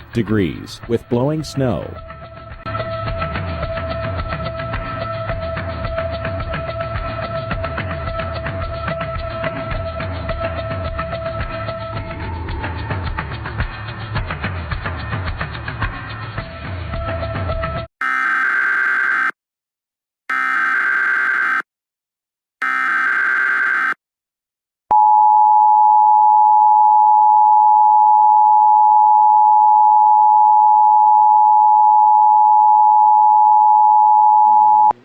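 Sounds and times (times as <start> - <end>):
loud steady dual tone: 24.9 - 35.0.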